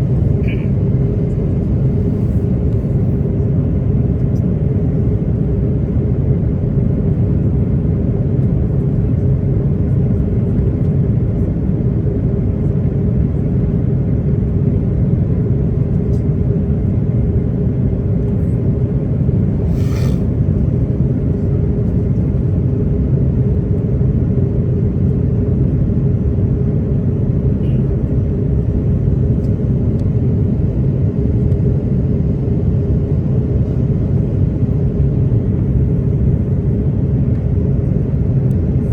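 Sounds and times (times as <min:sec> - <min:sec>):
steady hum: 0:00.0 - 0:03.4, 0:18.4 - 0:22.0
airplane cabin engine rumble: 0:00.0 - 0:38.9.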